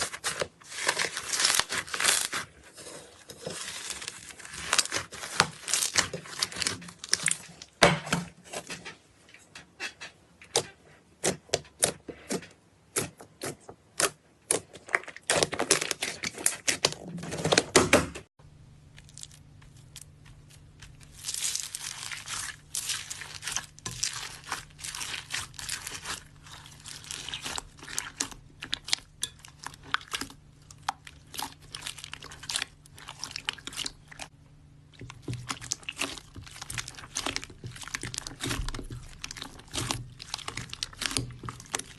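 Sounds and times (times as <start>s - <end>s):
slime crackling and popping: 0.0s - 2.5s, 3.6s - 7.6s, 18.8s - 34.3s, 35.0s - 41.9s
faint steady hum: 18.4s - 41.9s.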